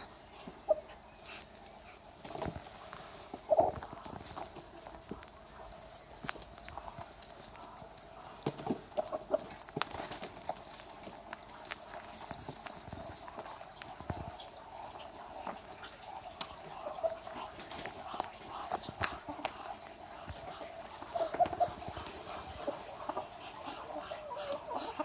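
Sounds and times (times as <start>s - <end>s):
ducks hissing: 0.0s - 4.1s, 13.1s - 25.0s.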